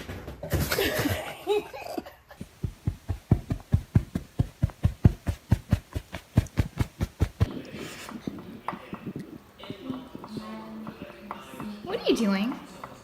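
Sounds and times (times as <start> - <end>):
rapid even knocking: 2.4 - 13.0.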